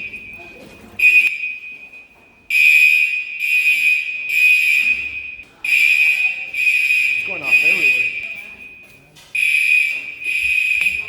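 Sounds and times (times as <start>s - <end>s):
fire alarm horns blaring: 1.0s - 11.0s.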